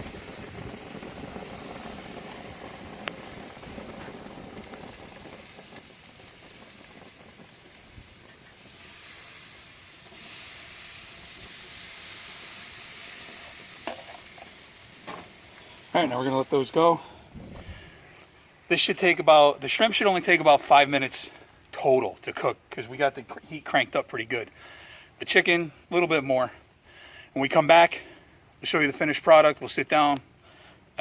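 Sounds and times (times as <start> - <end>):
food sizzling on a grill: 0.0 - 18.9.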